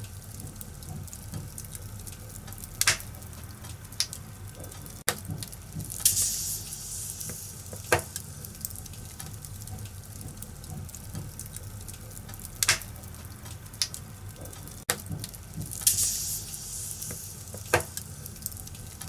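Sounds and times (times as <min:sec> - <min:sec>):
fire popping: 0:00.0 - 0:19.0
wood fire crackling: 0:00.0 - 0:19.0.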